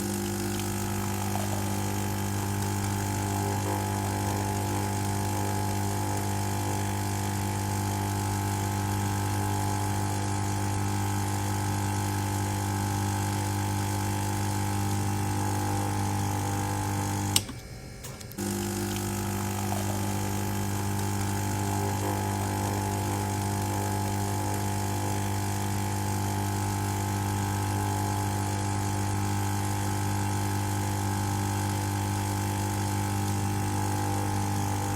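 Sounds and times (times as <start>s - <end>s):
espresso machine pump humming: 0.0s - 34.9s.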